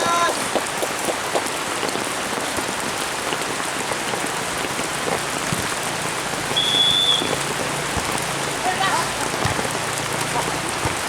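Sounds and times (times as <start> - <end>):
steady rain falling: 0.0 - 11.0
whistle blast: 6.5 - 7.4.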